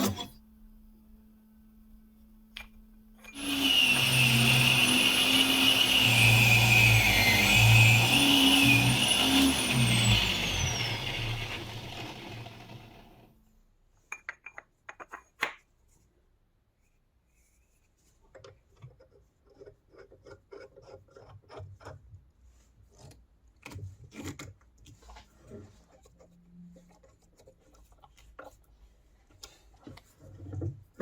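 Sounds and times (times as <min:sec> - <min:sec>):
power tool whining: 0:03.2 - 0:13.3.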